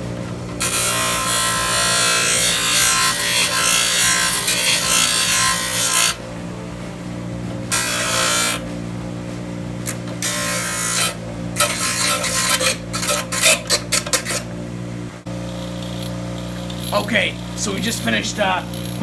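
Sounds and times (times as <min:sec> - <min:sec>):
steady low hum: 0:00.0 - 0:19.0
hand file rasping on phone edge: 0:10.2 - 0:14.5.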